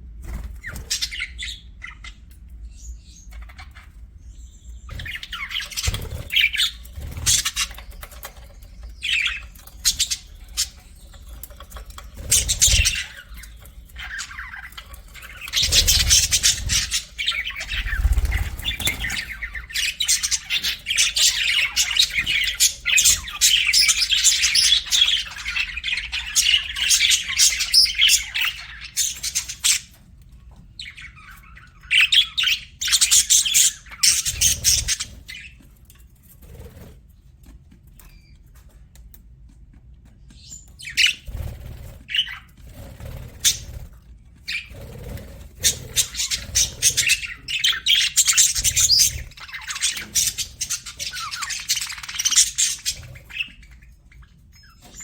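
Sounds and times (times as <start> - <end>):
budgerigars chirping and chattering: 0.2 - 37.1, 40.2 - 55.0.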